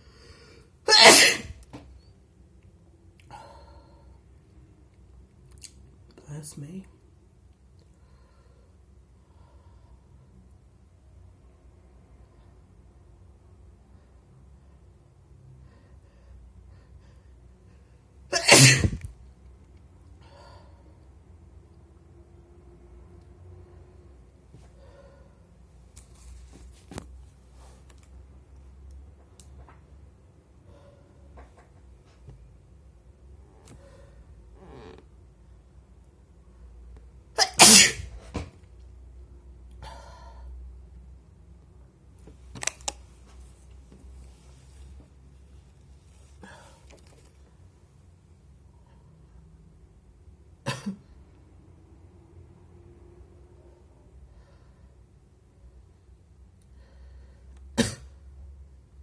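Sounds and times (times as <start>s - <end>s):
wet human sneeze: 0.9s - 1.6s, 18.3s - 19.1s, 37.4s - 38.4s, 57.8s - 58.2s.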